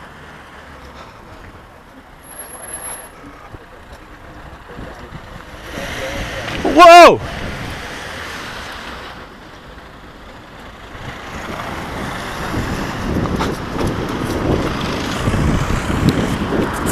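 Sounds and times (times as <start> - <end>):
vehicle passing by: 4.6 - 9.4, 10.7 - 16.9.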